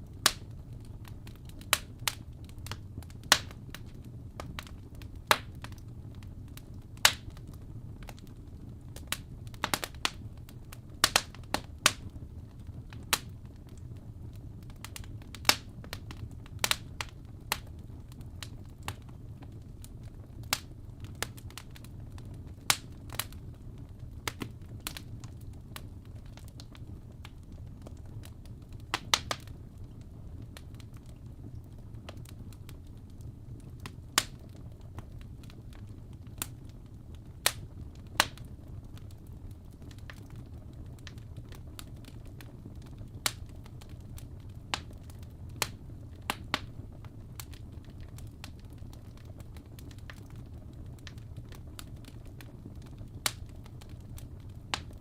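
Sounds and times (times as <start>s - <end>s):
fire crackling and popping: 0.0s - 55.0s.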